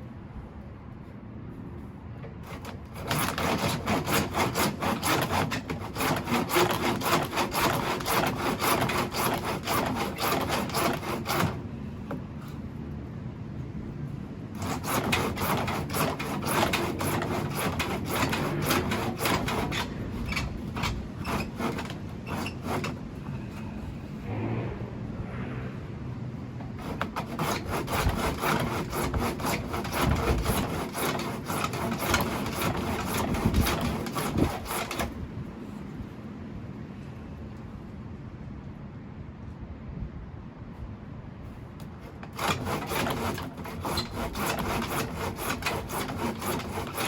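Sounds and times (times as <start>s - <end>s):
hand tool rasping on hard surface: 2.5s - 11.6s, 14.6s - 23.0s, 26.8s - 35.1s, 42.2s - 47.0s.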